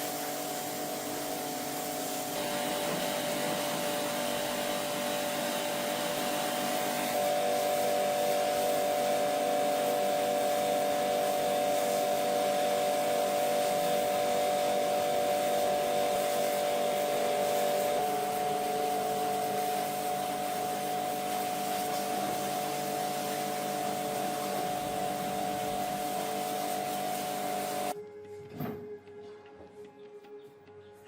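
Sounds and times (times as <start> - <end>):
machine humming and hissing: 0.0 - 28.0.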